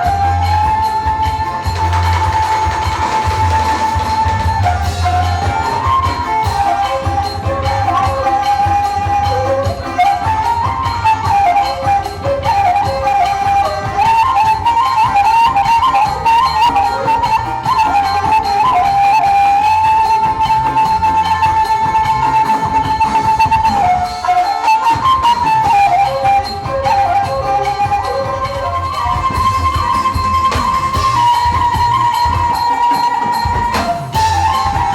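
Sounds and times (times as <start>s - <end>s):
low drum beat: 0.0s - 14.9s, 33.4s - 34.9s
reedy wind instrument melody: 0.0s - 34.9s.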